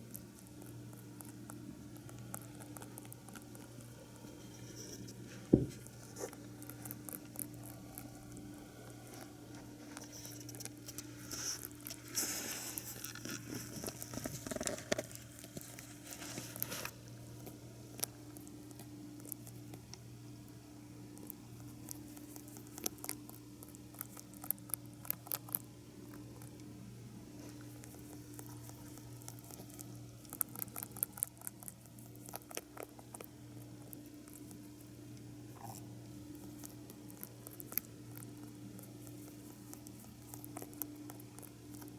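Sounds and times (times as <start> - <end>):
rabbit rustling and clicking: 0.0 - 41.9
steady low hum: 0.0 - 41.9.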